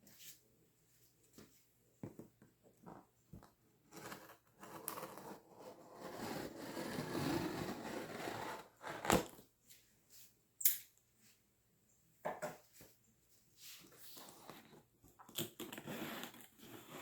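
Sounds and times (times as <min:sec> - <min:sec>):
packaging rustling and scraping: 0:13.8 - 0:17.0.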